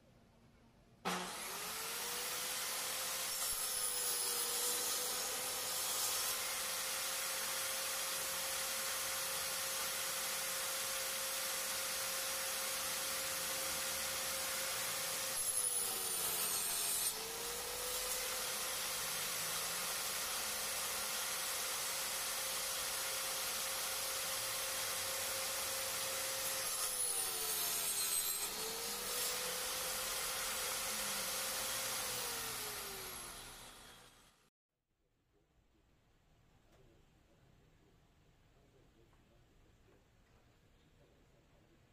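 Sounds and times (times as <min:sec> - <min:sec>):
saw winding down: 0:01.1 - 0:34.4
power saw cutting wood: 0:01.1 - 0:34.5.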